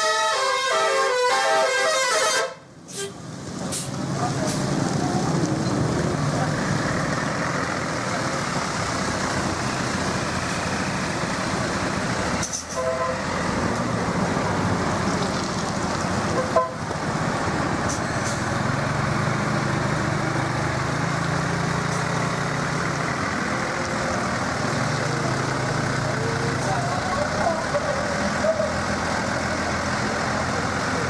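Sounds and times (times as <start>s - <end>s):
horn toots: 0.0s - 3.2s, 12.7s - 13.2s
buses passing on road: 0.0s - 31.0s
bus engine low hum: 2.6s - 31.0s.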